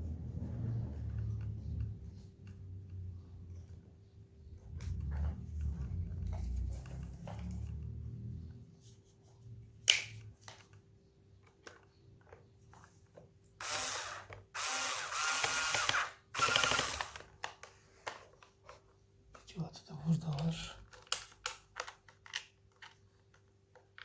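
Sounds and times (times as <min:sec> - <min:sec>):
plastic parts clicking and knocking: 0:09.8 - 0:13.4, 0:15.4 - 0:24.0.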